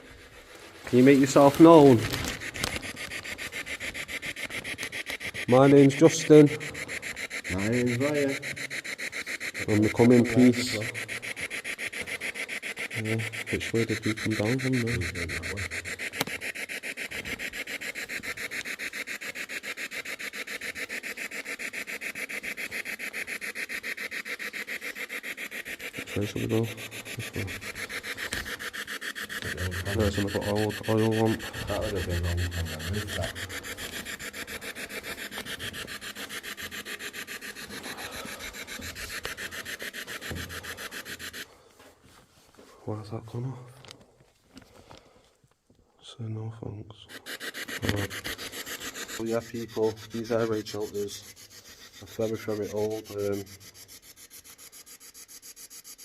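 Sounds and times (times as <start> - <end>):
pulsing white noise static: 0.0 - 41.4.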